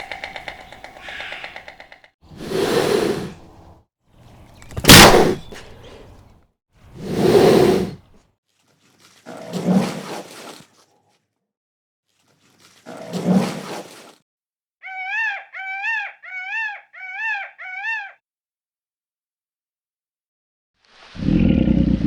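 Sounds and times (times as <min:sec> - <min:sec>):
large animal roaring: 0:21.2 - 0:22.0.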